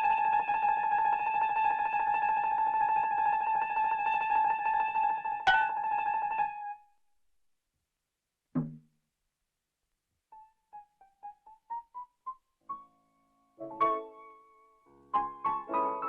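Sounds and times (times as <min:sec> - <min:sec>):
short low thud: 0:08.6 - 0:08.8
cartoon piano music: 0:15.2 - 0:16.0.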